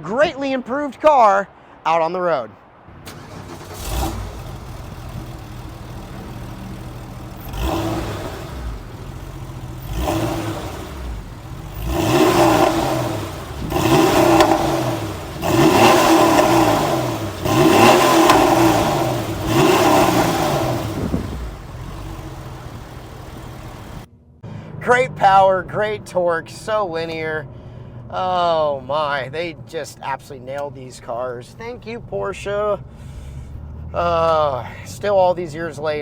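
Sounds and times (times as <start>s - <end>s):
car engine revving: 2.9s - 24.1s, 32.5s - 35.4s.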